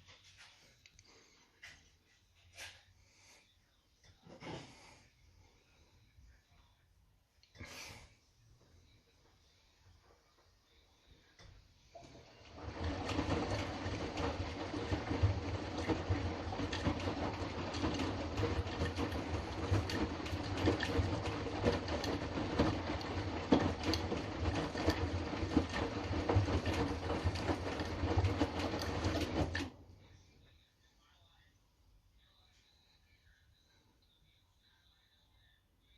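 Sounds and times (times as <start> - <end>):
washing machine motor hum: 7.5 - 30.7
laundry and water tumbling: 11.4 - 30.0.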